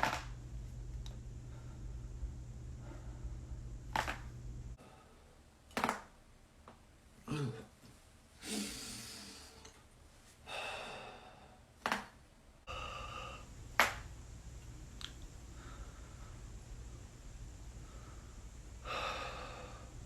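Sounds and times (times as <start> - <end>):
person breathing out heavily: 8.4 - 9.6, 10.4 - 11.6, 12.7 - 13.5, 17.8 - 20.0
short vocal sound: 8.4 - 9.6.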